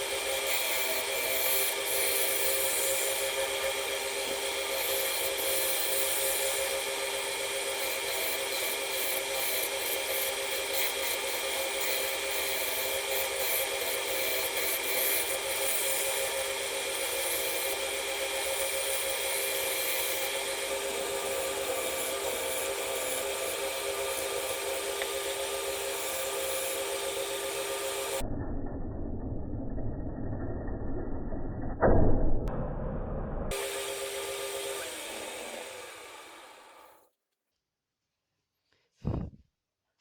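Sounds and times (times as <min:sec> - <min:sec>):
tool scraping spinning wood: 0:00.0 - 0:28.2, 0:33.5 - 0:37.0
wood lathe motor hum: 0:00.0 - 0:28.2, 0:33.5 - 0:37.0.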